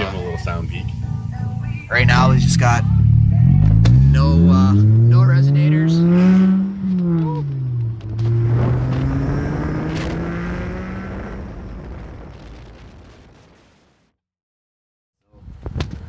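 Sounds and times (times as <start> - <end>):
car engine revving: 0.0 - 12.4.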